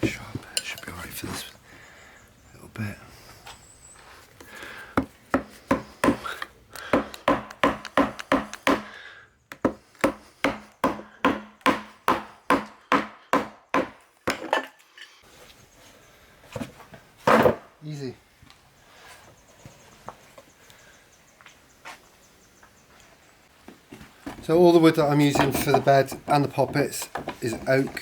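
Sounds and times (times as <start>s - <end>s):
mallet knocking chisel into wood: 5.0s - 6.3s, 6.9s - 14.5s.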